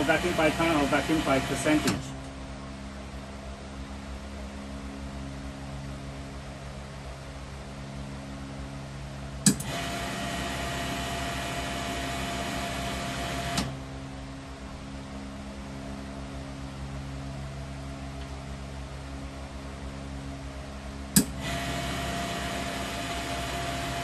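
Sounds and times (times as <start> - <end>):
loud hiss with whine: 0.0 - 2.1
vacuum machine humming: 0.0 - 2.3, 9.6 - 13.9, 21.2 - 24.0.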